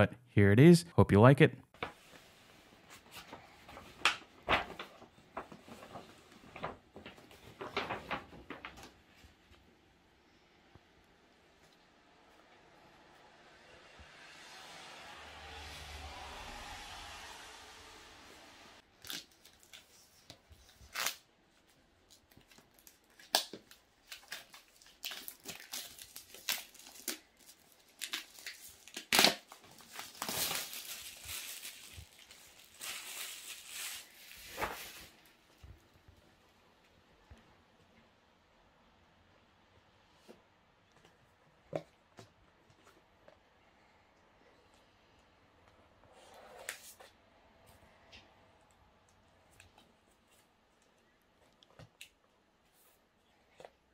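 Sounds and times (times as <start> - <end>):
packaging rustling and scraping: 24.0 - 35.4.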